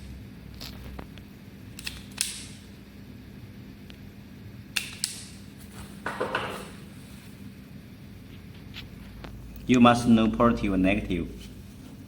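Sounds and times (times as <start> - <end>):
steady low hum: 0.0 - 12.0
rustling scrape: 5.6 - 7.5.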